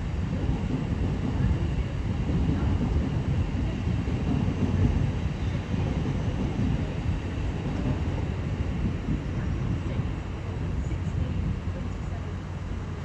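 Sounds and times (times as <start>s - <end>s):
train rumbling: 0.0s - 13.0s.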